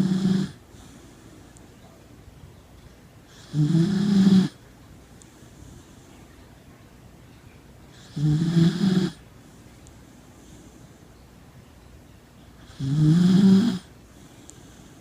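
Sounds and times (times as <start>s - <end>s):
dog snoring: 0.0s - 0.6s, 3.3s - 4.6s, 7.9s - 9.2s, 12.6s - 13.9s
quiet breathing: 0.0s - 2.1s, 3.2s - 7.1s, 7.8s - 15.0s.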